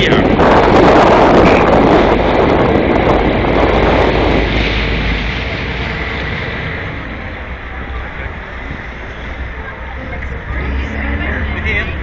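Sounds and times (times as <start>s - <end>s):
boat engine hum: 0.0s - 12.0s
wind buffeting microphone: 0.0s - 12.0s.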